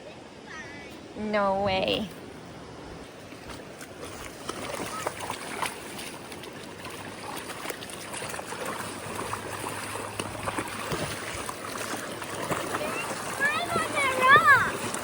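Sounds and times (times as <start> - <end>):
river water over rocks: 0.0 - 15.0.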